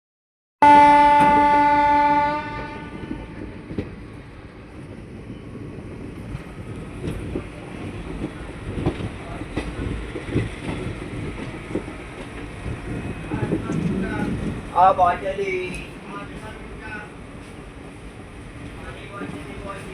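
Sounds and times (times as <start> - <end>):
locomotive horn blast: 0.6 - 3.6
train rumbling on track: 0.6 - 19.9.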